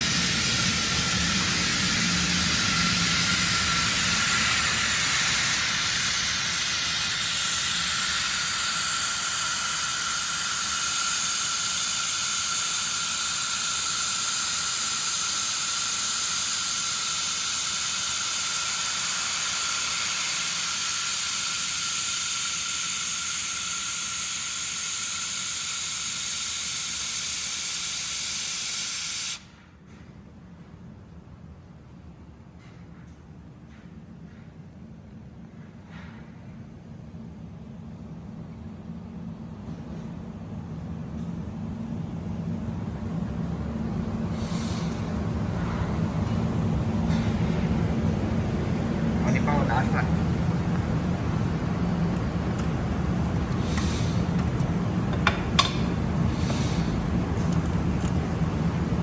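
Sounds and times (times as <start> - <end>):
laser welding hiss: 0.0 - 29.4.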